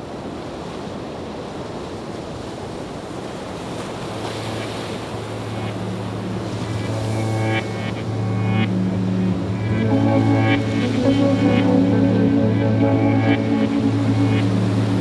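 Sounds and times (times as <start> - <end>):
water rushing: 3.5 - 15.0
low steady hum: 4.6 - 15.0.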